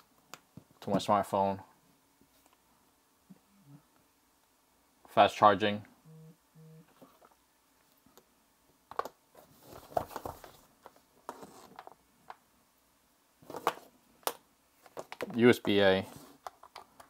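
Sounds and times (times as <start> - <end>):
short electronic beeps: 6.1 - 6.8
cables clicking and rustling: 13.4 - 17.0.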